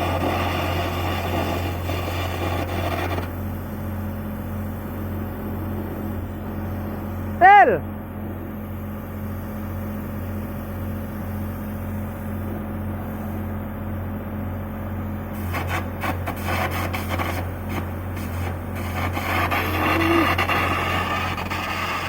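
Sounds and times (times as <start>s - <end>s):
electric arc crackling: 0.0s - 3.3s, 15.4s - 22.0s
welding equipment humming: 0.0s - 7.5s, 8.2s - 22.0s.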